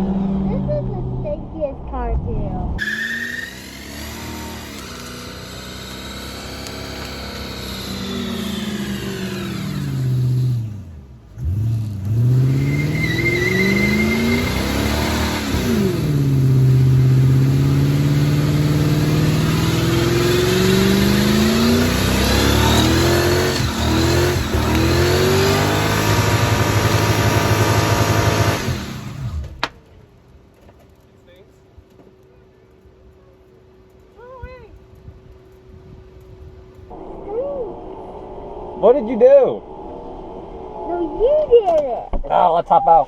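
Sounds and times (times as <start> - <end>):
tyres squealing: 2.8 - 10.6, 11.4 - 16.2
car engine revving hard: 2.8 - 29.6.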